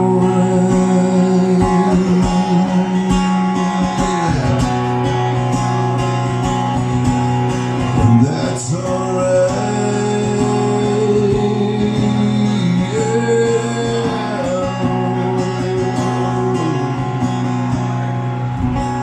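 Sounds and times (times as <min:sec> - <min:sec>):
guitar strumming: 0:00.0 - 0:19.0.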